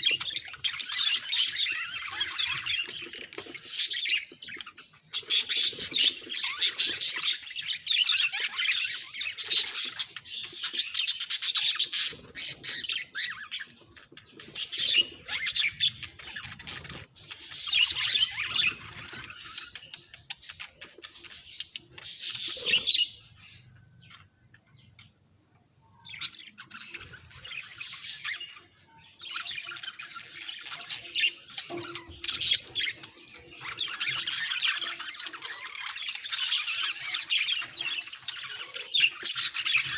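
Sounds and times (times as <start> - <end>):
budgerigar chattering and chirping: 0.0 - 23.6, 26.0 - 39.9.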